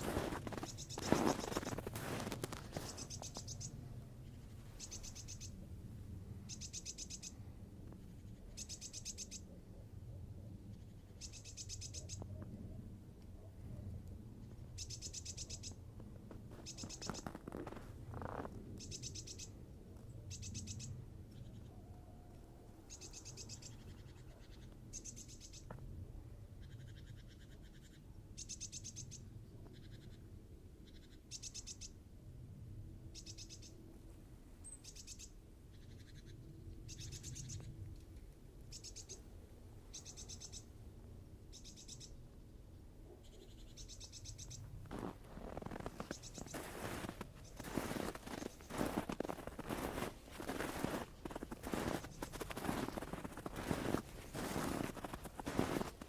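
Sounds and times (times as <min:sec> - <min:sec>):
footsteps crunching in snow: 0:00.0 - 0:03.5, 0:16.3 - 0:18.5, 0:44.8 - 0:56.0
faint low rumble: 0:00.0 - 0:31.1, 0:32.0 - 0:56.0
songbird trilling: 0:02.8 - 0:03.8, 0:04.8 - 0:05.6, 0:06.5 - 0:07.4, 0:08.6 - 0:09.4, 0:11.2 - 0:12.2, 0:14.8 - 0:15.8, 0:16.6 - 0:17.3, 0:18.8 - 0:19.5, 0:20.3 - 0:21.7, 0:22.9 - 0:25.6, 0:33.2 - 0:33.8, 0:34.6 - 0:37.7, 0:38.7 - 0:39.2, 0:39.9 - 0:40.7, 0:41.5 - 0:42.2, 0:43.3 - 0:56.0.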